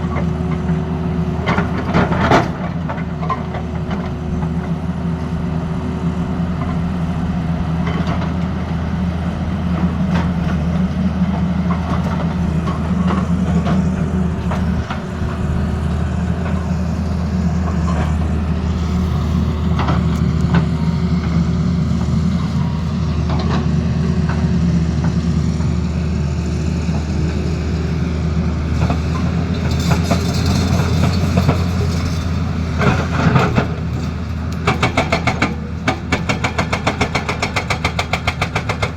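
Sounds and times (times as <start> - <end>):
excavator diesel engine running: 0.0 - 38.9
clanks and knocks: 28.8 - 38.9.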